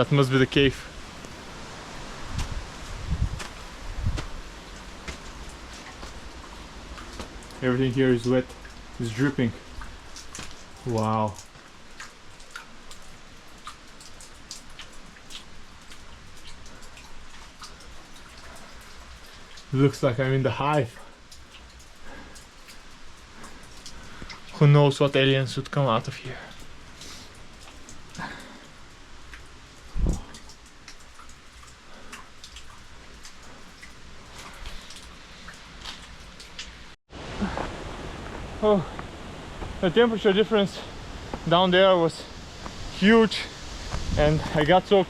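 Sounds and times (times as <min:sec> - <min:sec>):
faint steady hiss: 0:00.0 - 0:45.0
water drops splashing in cave: 0:02.3 - 0:42.8.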